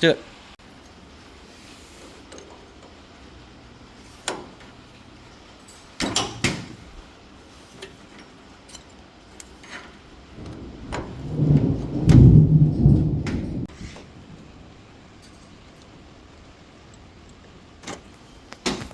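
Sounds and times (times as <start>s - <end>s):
metal tools clanking: 7.8s - 10.0s, 15.2s - 16.0s
rough low rumble: 10.2s - 16.2s.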